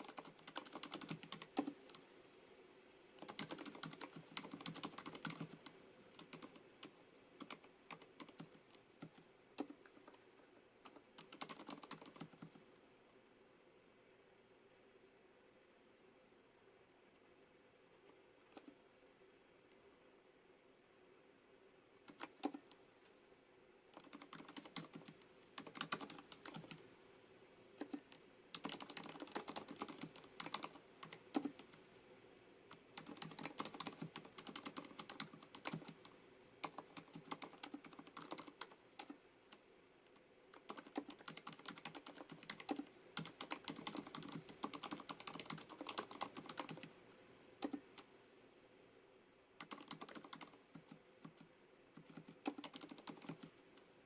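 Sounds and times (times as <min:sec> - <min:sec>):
mechanical keyboard typing: 0:00.0 - 0:02.0, 0:03.2 - 0:12.6, 0:18.5 - 0:18.8, 0:22.0 - 0:22.8, 0:23.9 - 0:26.8, 0:27.8 - 0:31.8, 0:32.7 - 0:39.6, 0:40.5 - 0:46.9, 0:47.6 - 0:48.1, 0:49.6 - 0:53.5.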